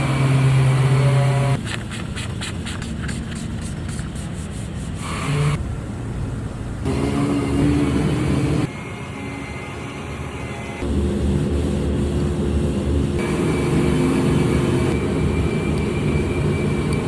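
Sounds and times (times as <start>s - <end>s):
sander whirring: 6.9s - 17.0s.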